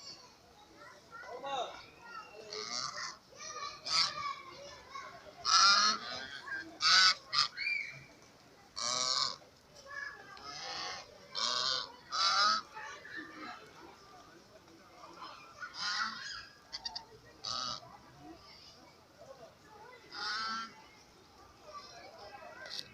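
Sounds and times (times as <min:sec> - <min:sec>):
geese honking: 0:02.4 - 0:03.2, 0:03.8 - 0:04.2, 0:05.4 - 0:07.7, 0:08.8 - 0:09.4, 0:10.4 - 0:12.8, 0:15.2 - 0:17.8, 0:20.1 - 0:20.8.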